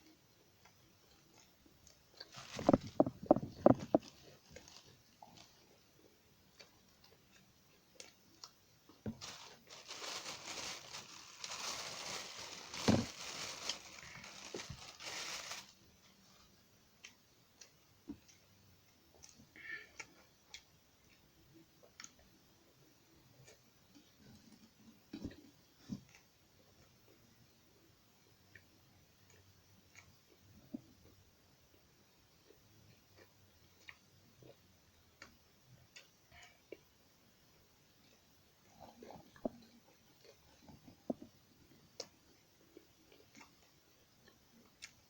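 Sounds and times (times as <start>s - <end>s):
rustling and crinkling: 2.2s - 5.8s, 8.9s - 16.4s.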